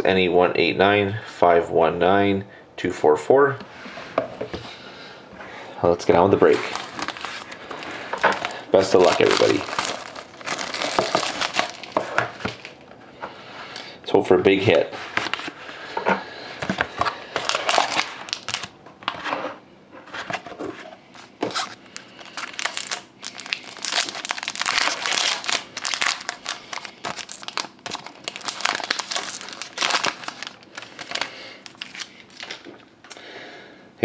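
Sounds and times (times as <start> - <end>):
packaging wrap crinkling and tearing: 6.4 - 12.8, 17.0 - 18.7, 21.2 - 32.7.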